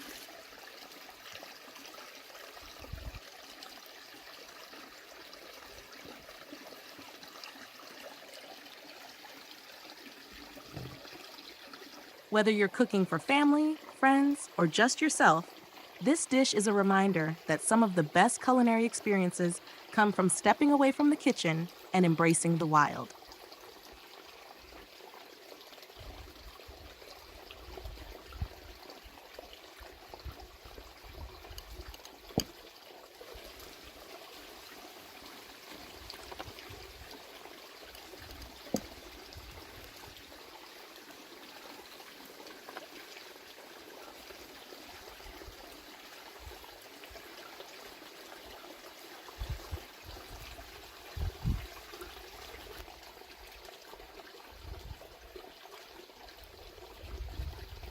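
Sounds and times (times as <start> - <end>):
trickling running water: 0.0 - 57.9.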